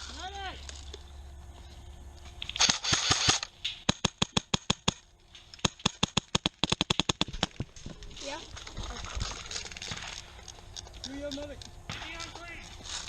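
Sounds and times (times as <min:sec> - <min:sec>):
airsoft rifle shots: 0:02.5 - 0:05.0, 0:05.6 - 0:07.5, 0:11.9 - 0:12.4
handling rustle: 0:07.4 - 0:13.0.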